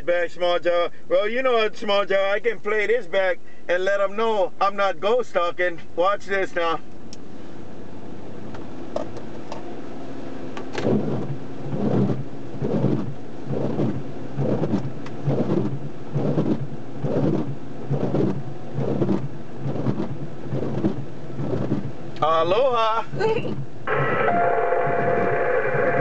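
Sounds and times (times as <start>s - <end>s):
rhythmic pulsing noise: 10.8s - 22.0s, 23.2s - 26.0s
radio static hiss: 23.9s - 26.0s.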